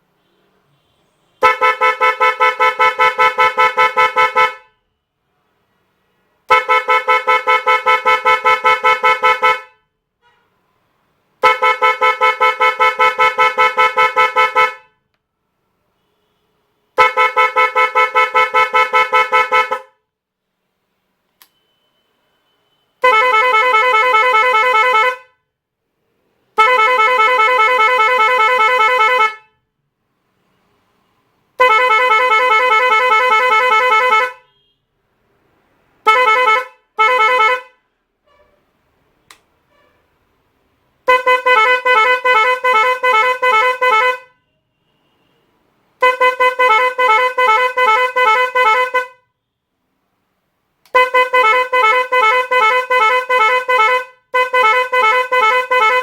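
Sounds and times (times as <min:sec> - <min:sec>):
electric horn blasts: 0:31.6 - 0:34.4, 0:41.1 - 0:44.3, 0:46.0 - 0:49.2, 0:50.9 - 0:56.0.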